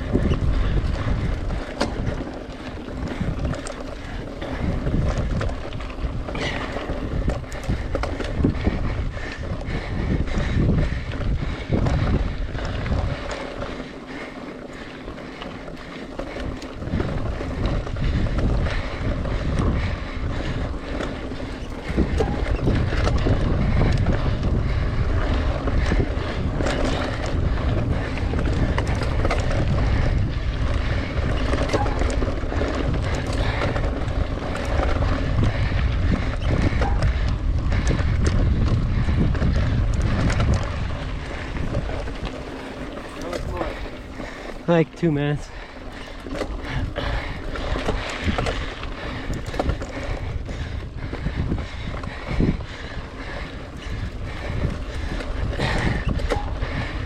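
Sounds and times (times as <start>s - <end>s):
bike rattles and knocks: 0.0s - 57.0s
wind buffeting microphone: 0.0s - 57.0s.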